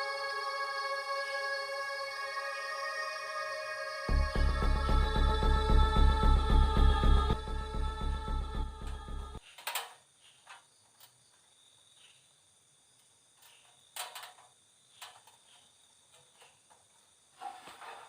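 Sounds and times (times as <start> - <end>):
background music: 0.0 - 9.4
crickets trilling: 9.4 - 18.0.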